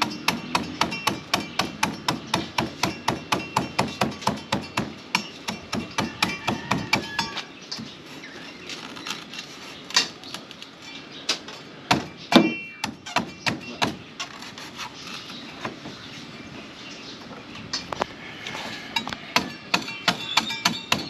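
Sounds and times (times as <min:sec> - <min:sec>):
machete chopping coconut husk: 0:00.0 - 0:07.9, 0:11.4 - 0:14.8, 0:19.4 - 0:21.0.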